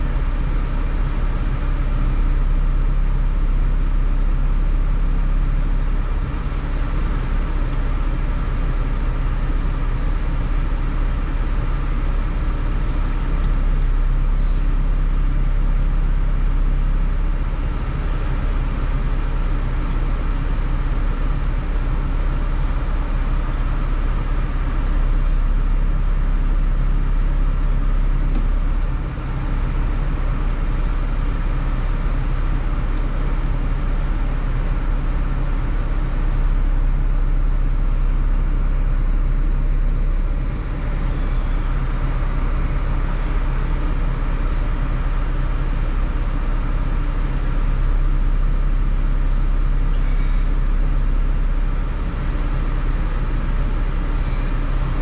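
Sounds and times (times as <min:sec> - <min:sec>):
car engine humming: 0:00.0 - 0:55.0.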